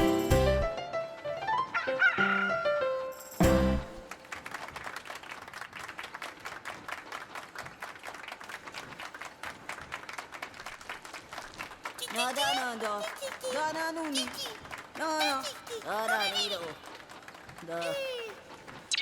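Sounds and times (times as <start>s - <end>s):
crowd clapping and applauding: 4.0s - 18.8s.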